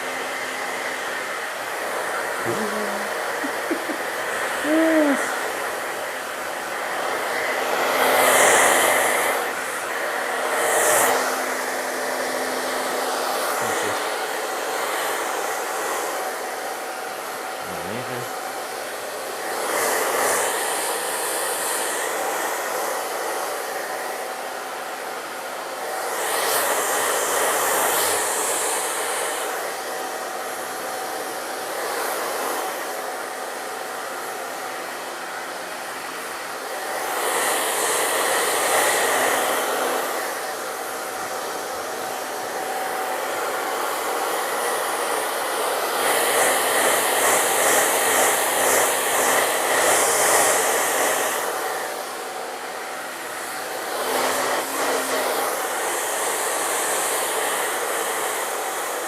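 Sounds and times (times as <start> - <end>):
hair dryer blowing: 0.0 - 59.0.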